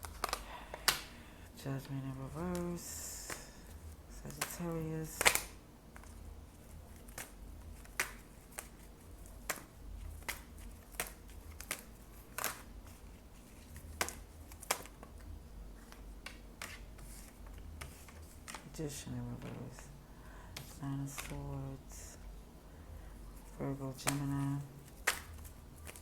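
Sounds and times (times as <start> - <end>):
cards clicking and snapping: 0.0 - 1.2, 2.4 - 18.8, 20.6 - 21.5, 23.4 - 26.0
low steady hum: 0.0 - 26.0.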